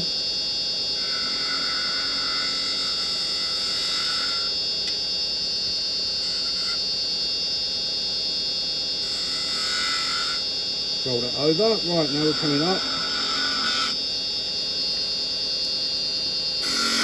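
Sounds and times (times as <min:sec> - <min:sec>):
chisel cutting wood: 0:01.0 - 0:04.5, 0:09.0 - 0:10.4, 0:11.3 - 0:14.0, 0:16.6 - 0:17.0
wood lathe whining: 0:01.0 - 0:05.0, 0:06.1 - 0:06.9, 0:09.0 - 0:14.0, 0:14.8 - 0:17.0.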